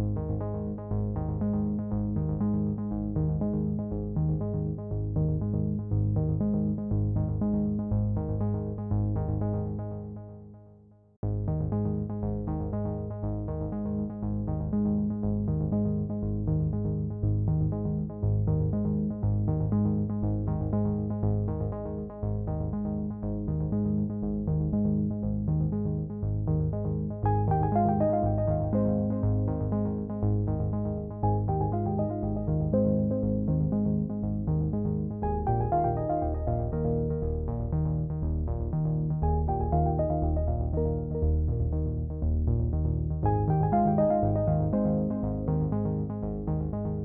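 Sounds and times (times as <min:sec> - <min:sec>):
synthesizer music: 0:27.3 - 0:30.1, 0:31.2 - 0:34.1, 0:35.2 - 0:37.5, 0:39.2 - 0:41.7, 0:43.2 - 0:46.2.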